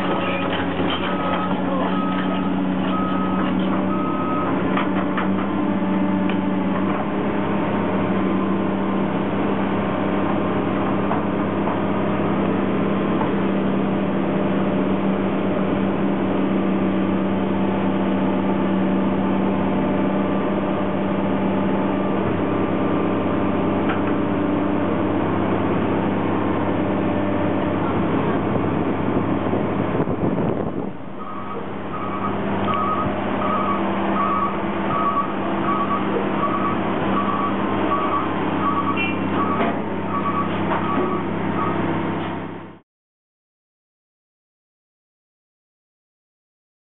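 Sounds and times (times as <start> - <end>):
diesel machinery engine drone: 0.0 - 42.8
reversing alarm beeping: 0.1 - 4.6, 31.2 - 41.8.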